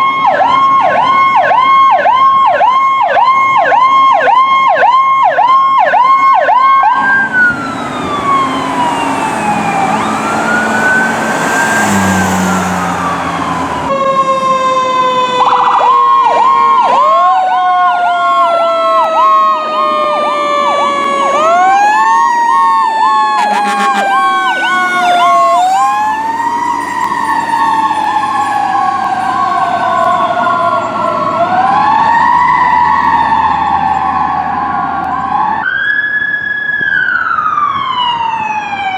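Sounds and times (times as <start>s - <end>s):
emergency vehicle sirens: 0.0s - 38.9s
fast pulsing siren tone: 4.9s - 17.8s, 18.5s - 34.4s.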